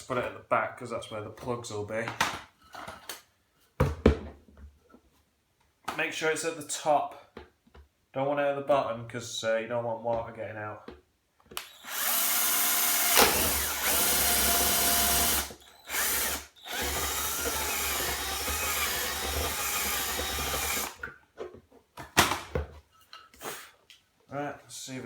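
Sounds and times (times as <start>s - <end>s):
power drill boring plastic: 11.6s - 21.0s.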